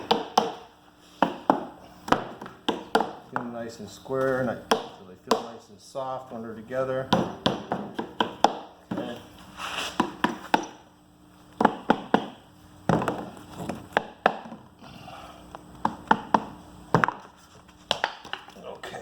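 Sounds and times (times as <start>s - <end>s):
wooden boards knocking: 0.0s - 3.5s, 4.6s - 5.6s, 7.1s - 9.2s, 11.6s - 14.7s, 15.8s - 17.3s.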